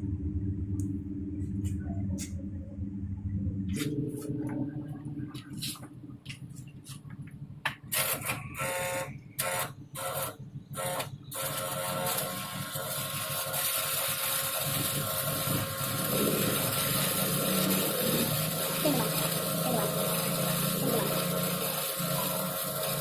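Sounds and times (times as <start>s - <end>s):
low hum: 0.0s - 7.7s
welding arc crackling: 7.7s - 23.0s.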